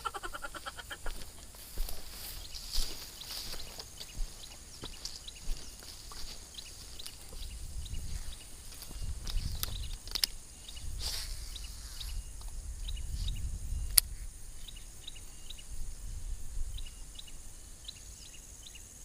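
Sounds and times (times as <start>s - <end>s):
bird chirping: 0.0s - 19.0s
insect hum: 0.0s - 19.0s
sharp click: 9.3s - 10.4s, 13.9s - 14.1s.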